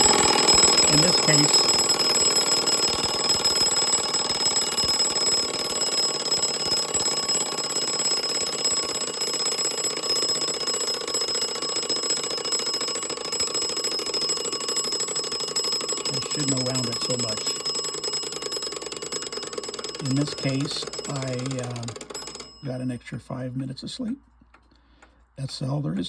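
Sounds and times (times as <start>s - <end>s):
mechanical clock alarm ringing: 0.0s - 23.2s.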